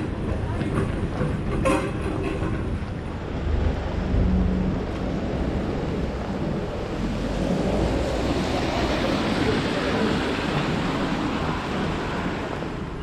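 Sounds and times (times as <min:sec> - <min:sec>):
wind rumble on microphone: 0:00.0 - 0:13.0
heavy rain on a street: 0:03.4 - 0:13.0.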